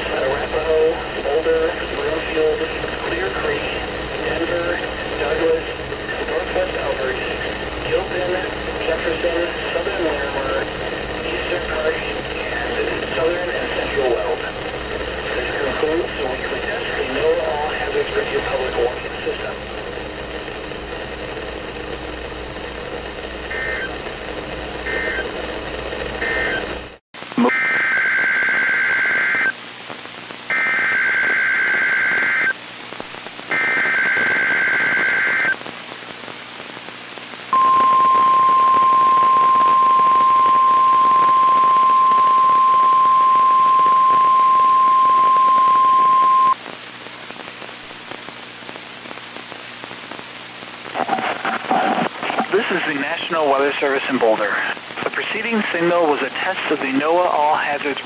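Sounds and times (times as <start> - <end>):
radio hiss: 0.0 - 58.0
screechy digital data bursts: 24.9 - 25.2
faint short beeps: 37.6 - 46.6
steady alarm tone: 37.6 - 46.6.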